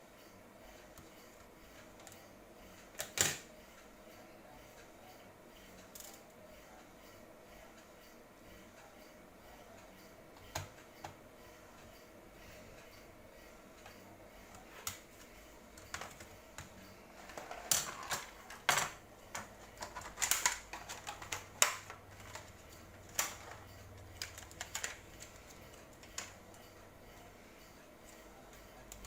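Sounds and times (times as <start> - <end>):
laptop parts clicking and knocking: 10.4 - 11.2, 15.7 - 26.7.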